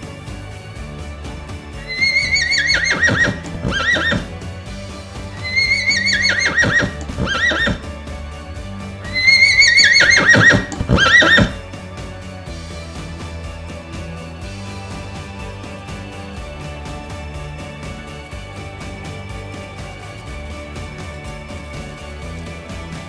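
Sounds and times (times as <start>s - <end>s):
background music: 0.0s - 23.0s
horse neighing: 1.9s - 4.4s, 5.4s - 7.9s, 9.1s - 11.6s.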